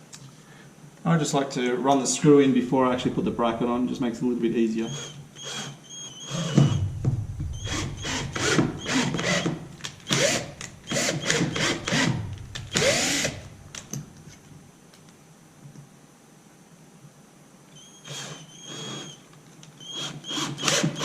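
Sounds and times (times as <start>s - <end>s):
cordless drill motor whine: 4.8s - 6.8s, 7.6s - 13.5s, 17.8s - 19.2s.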